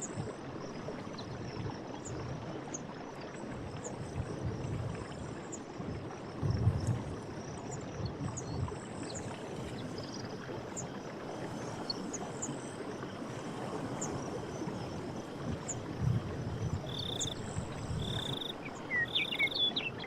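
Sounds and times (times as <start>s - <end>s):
flowing water: 0.0s - 20.0s
small animals chirping: 18.0s - 19.7s.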